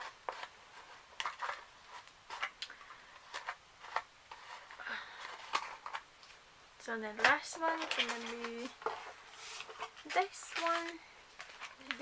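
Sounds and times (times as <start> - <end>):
packaging clicks and taps: 7.2 - 9.1.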